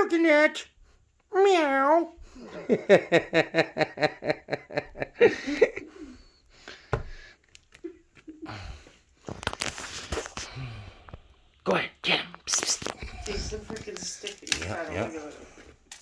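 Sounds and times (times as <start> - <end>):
person laughing hard: 2.4 - 6.1
breathy chuckles: 2.4 - 6.3.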